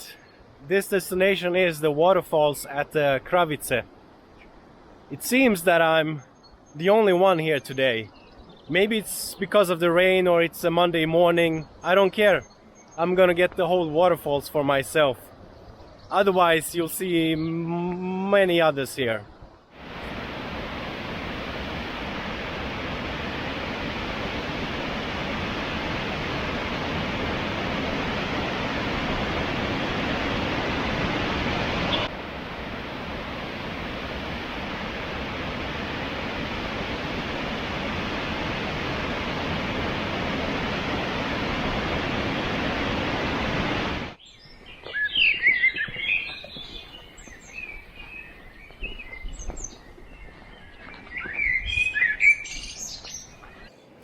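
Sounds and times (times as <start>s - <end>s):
small birds chirping: 6.1s - 18.0s, 31.8s - 32.1s, 44.2s - 54.0s
waterfall rushing: 19.8s - 44.2s.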